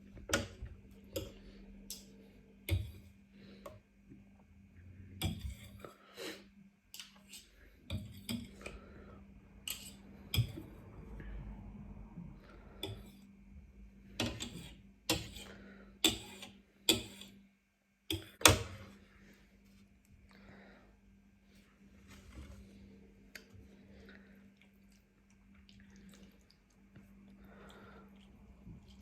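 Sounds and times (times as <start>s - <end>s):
faint steady hum: 0.0s - 29.0s
utensils clinking against a bowl: 9.7s - 10.6s.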